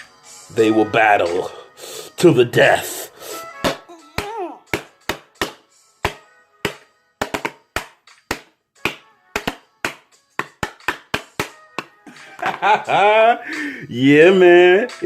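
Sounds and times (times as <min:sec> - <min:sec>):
percussive music with ringing hits: 0:03.5 - 0:13.0.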